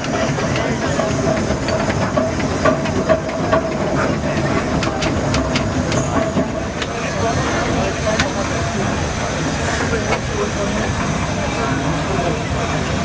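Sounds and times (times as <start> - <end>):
machinery clanking and ticking: 0.0 - 8.9
steam hissing: 0.0 - 11.4.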